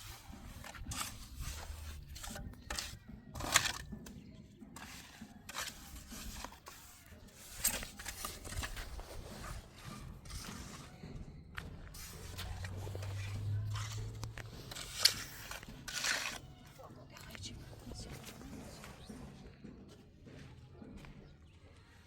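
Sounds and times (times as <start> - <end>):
scraping and clicking of hand work: 0.0 - 16.5.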